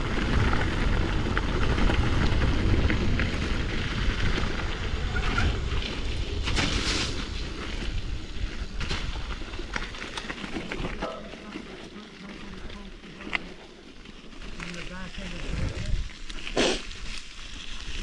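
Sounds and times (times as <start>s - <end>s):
wind buffeting microphone: 0.0s - 11.8s, 14.8s - 16.3s
bike clicks and rattles: 0.0s - 18.0s
tyres rumbling on dirt: 0.0s - 18.0s
brief hiss: 16.5s - 16.9s.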